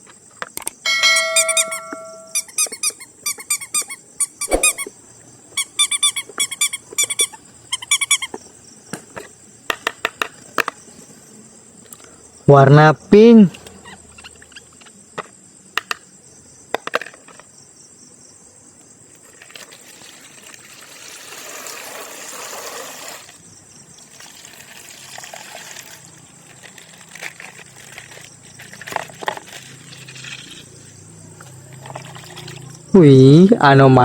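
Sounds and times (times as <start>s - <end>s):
water pouring and splashing: 19.2s - 23.4s, 24.0s - 30.5s, 31.6s - 32.8s
plastic crinkling and tearing: 25.6s - 30.6s.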